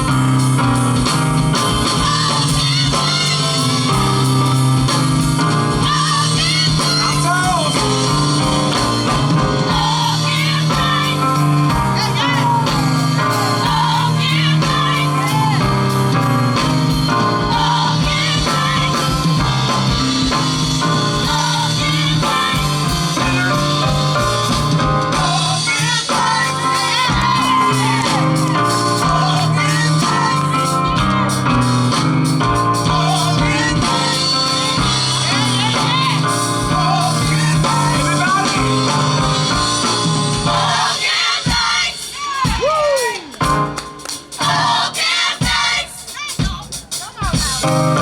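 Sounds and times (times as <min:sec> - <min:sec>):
bass line: 0:00.0 - 0:41.7
vocal group singing: 0:00.0 - 0:43.4, 0:44.2 - 0:48.0
band accompaniment: 0:00.0 - 0:48.0
shouted vocals: 0:40.6 - 0:43.4.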